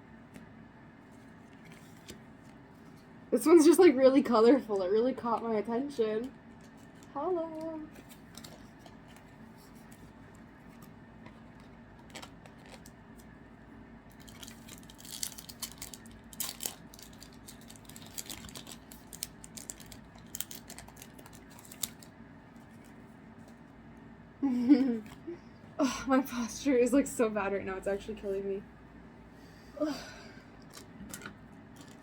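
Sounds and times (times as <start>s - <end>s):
cards and wrappers rustling: 5.4s - 13.4s, 14.1s - 23.6s, 30.7s - 32.0s.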